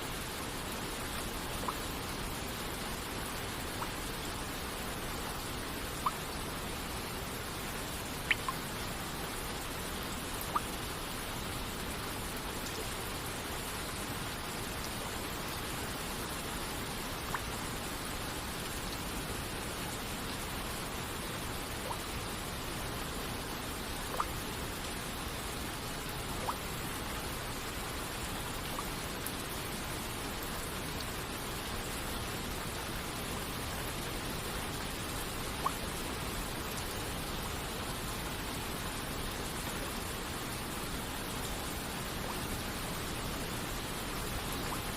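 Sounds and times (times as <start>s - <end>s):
rain rushing: 0.1s - 44.9s
water droplets plinking: 8.3s - 8.6s, 24.1s - 24.3s.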